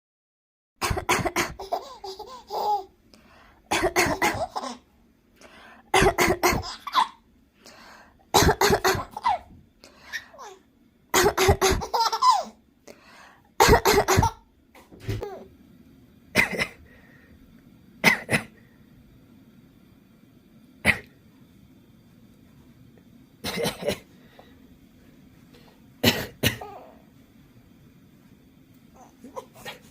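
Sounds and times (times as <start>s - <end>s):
woman coughing: 0.8s - 1.6s, 3.7s - 4.6s, 6.0s - 6.7s, 8.4s - 9.2s, 11.2s - 11.9s, 13.6s - 14.3s, 16.4s - 16.8s, 23.4s - 24.1s, 26.0s - 26.7s
baby laughing: 0.8s - 2.9s, 3.9s - 4.9s, 6.1s - 7.2s, 8.8s - 9.5s, 11.2s - 12.6s, 29.0s - 29.9s.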